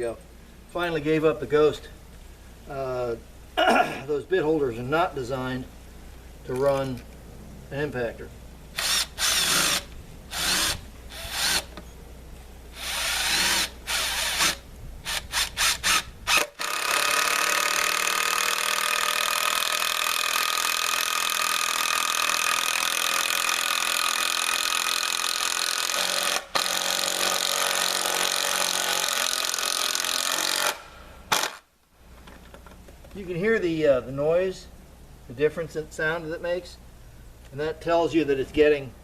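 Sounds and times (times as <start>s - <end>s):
impact driver running: 8.8s - 11.8s.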